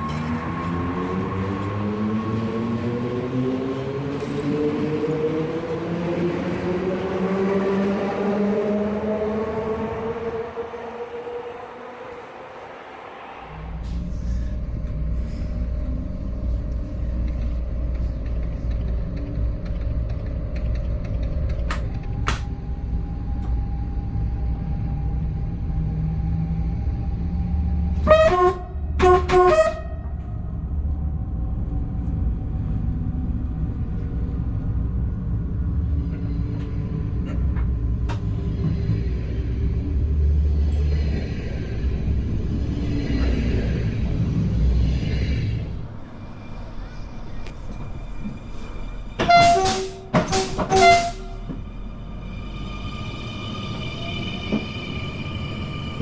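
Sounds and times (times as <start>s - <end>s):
train rumbling: 0.0s - 56.0s
train horn blasts: 28.0s - 30.7s, 49.2s - 51.6s.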